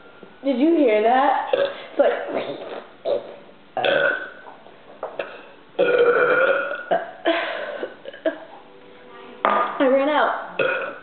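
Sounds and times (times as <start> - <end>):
person belching: 2.4 - 4.4, 5.2 - 7.3, 10.6 - 11.0.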